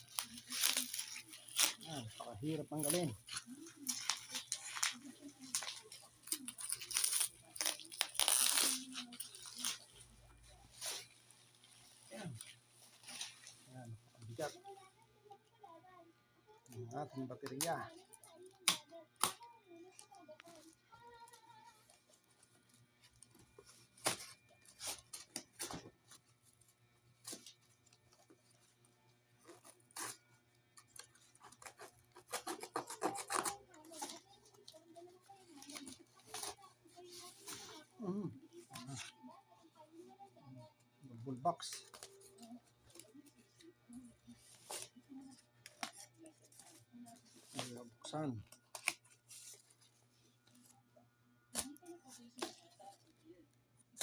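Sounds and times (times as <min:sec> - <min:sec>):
packaging rustling and tearing: 0:00.0 - 0:14.9, 0:30.8 - 0:39.3.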